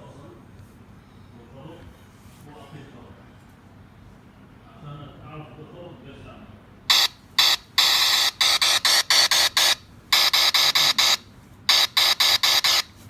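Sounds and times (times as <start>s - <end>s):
harsh buzzing bursts from phone speaker: 6.9s - 13.0s.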